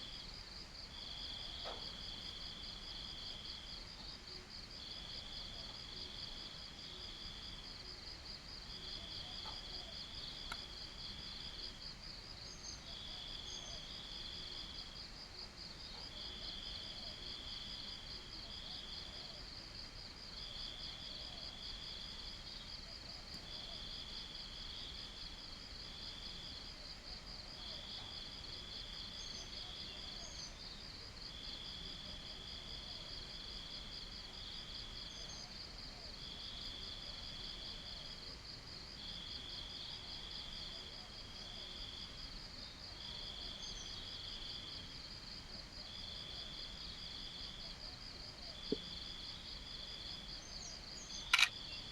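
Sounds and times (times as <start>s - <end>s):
insect repeated chirping phrases: 48.6s - 51.9s.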